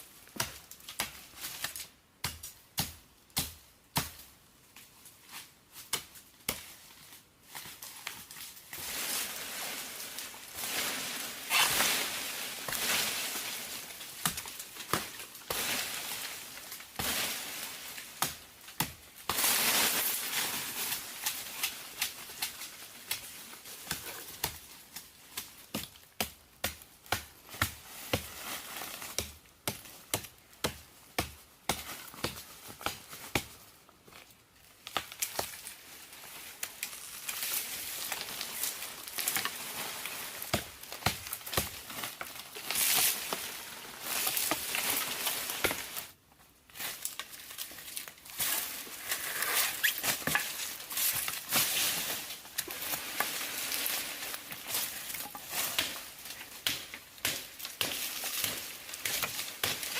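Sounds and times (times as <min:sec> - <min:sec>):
rustling crinkling noise: 0:04.6 - 0:26.1, 0:31.9 - 0:59.9.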